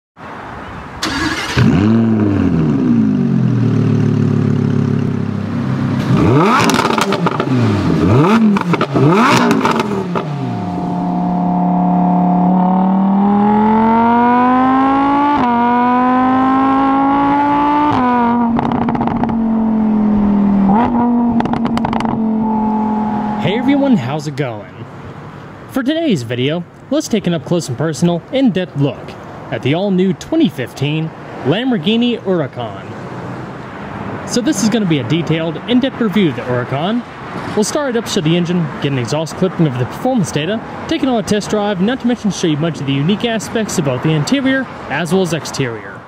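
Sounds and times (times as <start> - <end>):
sports car engine revving: 1.0 - 24.1.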